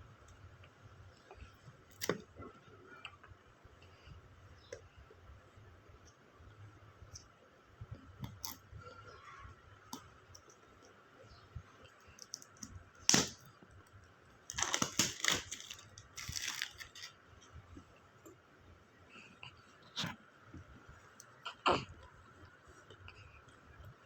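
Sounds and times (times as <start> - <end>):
plastic crinkling: 14.5 - 17.2.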